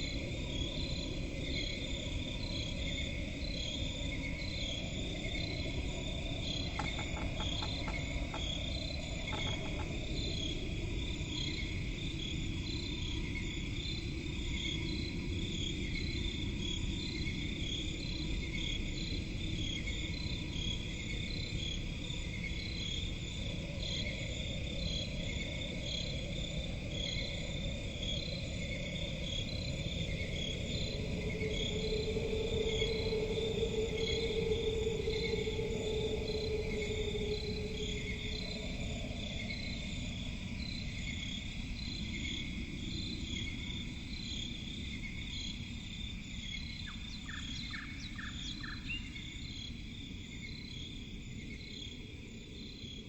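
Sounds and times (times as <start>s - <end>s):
crickets chirping: 0.0s - 53.0s
faint clicks: 6.8s - 8.6s, 9.2s - 10.0s
low rumbling background: 27.6s - 42.0s.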